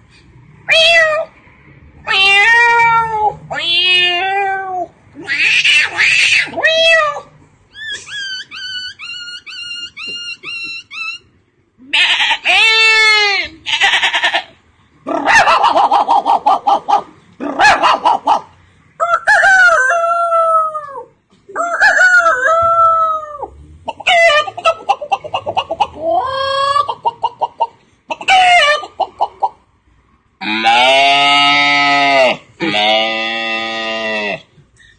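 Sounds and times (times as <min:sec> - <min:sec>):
man imitating chicken clucks: 0:15.1 - 0:29.6.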